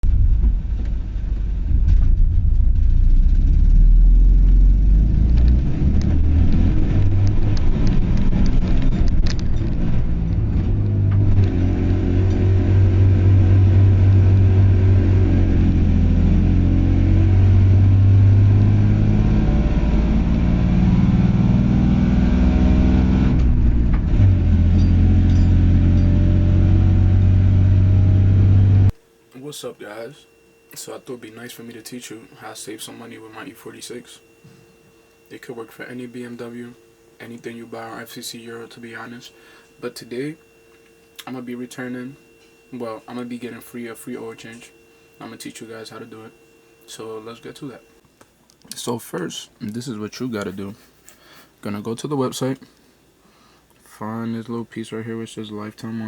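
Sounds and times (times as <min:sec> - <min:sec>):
car engine revving: 0:00.0 - 0:29.0.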